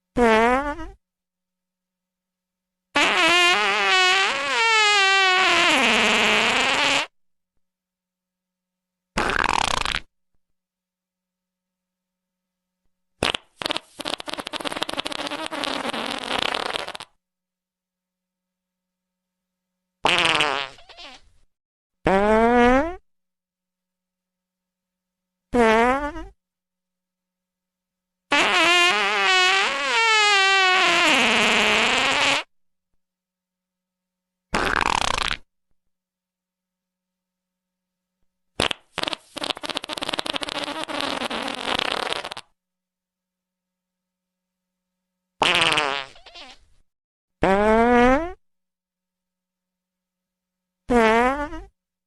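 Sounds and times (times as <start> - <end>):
fart sounds: 0.2 - 1.0, 3.0 - 7.2, 9.1 - 10.1, 13.2 - 17.2, 20.0 - 23.1, 25.5 - 26.4, 28.3 - 32.5, 34.5 - 35.5, 38.6 - 42.6, 45.4 - 46.8, 47.4 - 48.4, 50.9 - 51.8.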